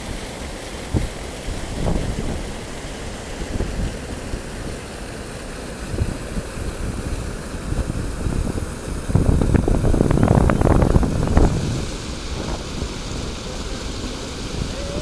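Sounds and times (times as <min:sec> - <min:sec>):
wind buffeting microphone: 0:00.8 - 0:04.8, 0:05.7 - 0:15.0.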